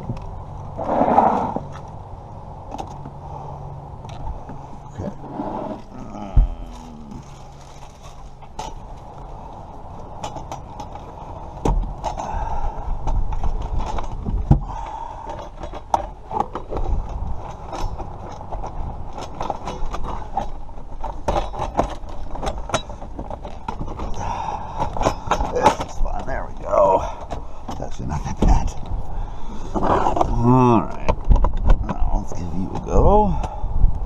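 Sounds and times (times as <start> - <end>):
metal and plastic parts rattling: 10.1 - 28.9.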